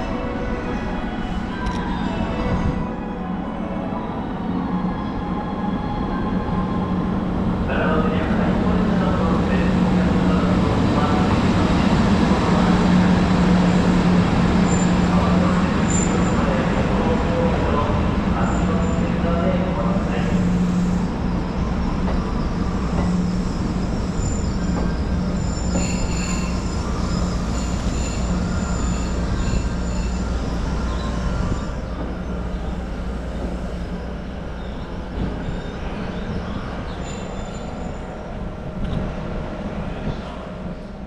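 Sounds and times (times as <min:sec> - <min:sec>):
electric locomotive hum: 0:00.0 - 0:41.0
high-pitched wheel squeal: 0:22.1 - 0:31.7.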